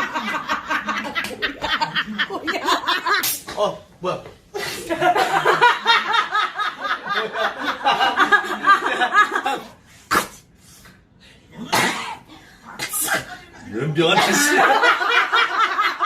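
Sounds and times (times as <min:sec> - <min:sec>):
audience laughing: 0:00.0 - 0:03.2, 0:04.8 - 0:09.8, 0:14.0 - 0:16.0.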